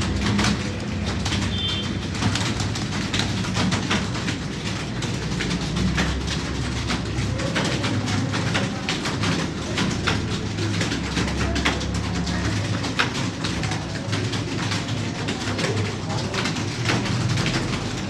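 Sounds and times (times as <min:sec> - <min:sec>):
computer keyboard typing: 0:00.0 - 0:18.0.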